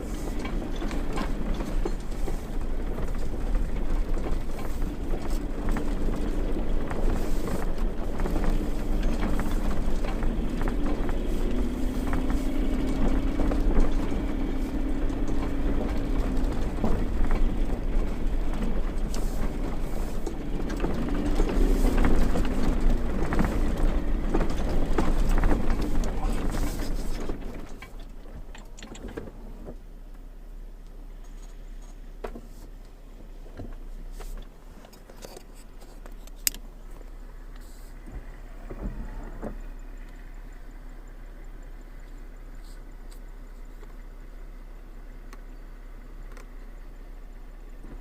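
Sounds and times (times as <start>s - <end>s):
car engine drone: 0.0s - 48.0s
rumbling road noise: 0.0s - 48.0s
knocks and rattles: 0.1s - 29.8s.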